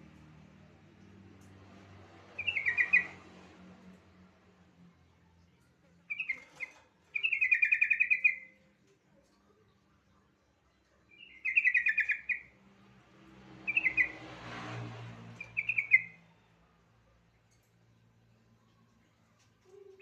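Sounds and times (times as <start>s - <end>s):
bulbul singing: 2.4s - 3.2s, 6.1s - 8.6s, 11.1s - 12.6s, 13.7s - 14.2s, 15.3s - 16.4s.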